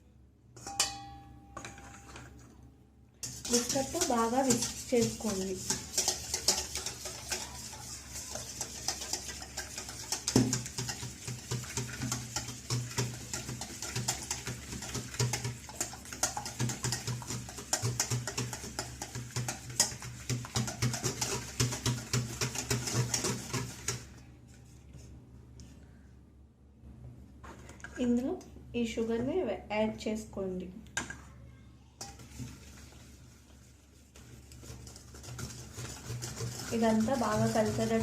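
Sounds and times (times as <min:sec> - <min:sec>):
whisk clicking against bowl: 0:03.2 - 0:24.1, 0:34.2 - 0:38.0.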